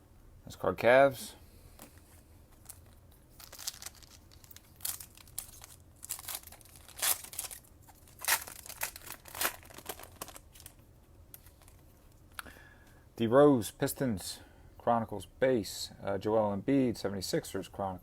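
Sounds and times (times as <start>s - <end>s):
foil wrapper tearing and crinkling: 2.6s - 10.8s.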